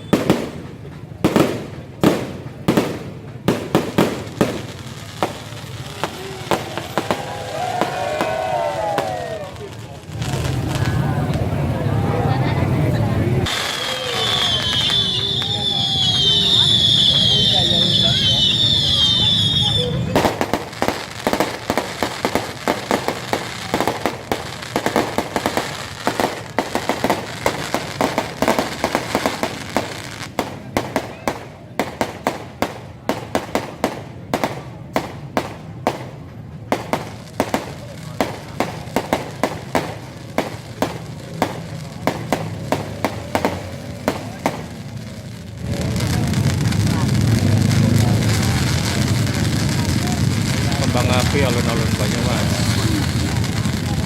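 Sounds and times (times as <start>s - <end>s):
fireworks bangs and crackling: 0.0s - 54.0s.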